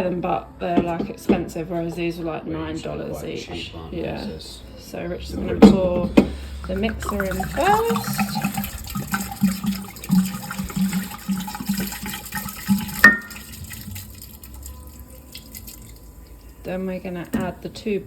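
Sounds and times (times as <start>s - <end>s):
liquid glugging out of a bottle: 5.4s - 16.6s.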